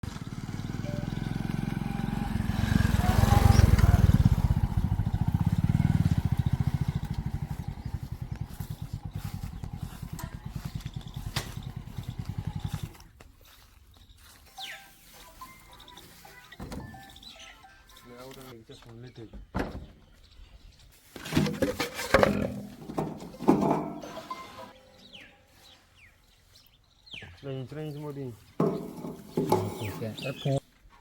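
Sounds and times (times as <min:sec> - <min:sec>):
tractor diesel engine running: 0:00.0 - 0:13.1, 0:28.6 - 0:30.6.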